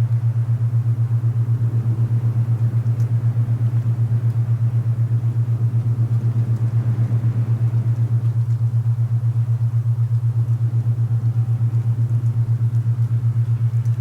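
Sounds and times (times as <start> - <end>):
soft wind hiss: 0.0 - 10.5
low pulsing binaural tone: 0.0 - 14.0.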